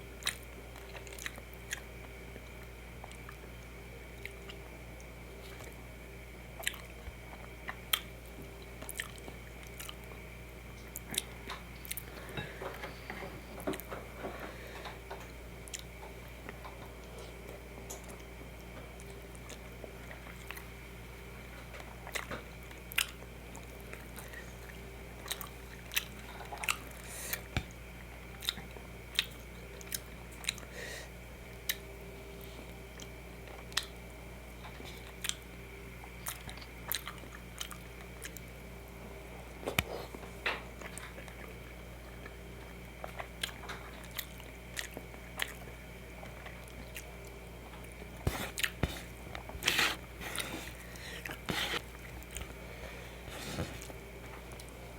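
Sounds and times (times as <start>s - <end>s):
steady low hum: 0.0s - 54.9s
mouth chewing smacks: 6.6s - 10.2s, 22.0s - 30.7s, 36.1s - 38.5s, 43.0s - 52.6s.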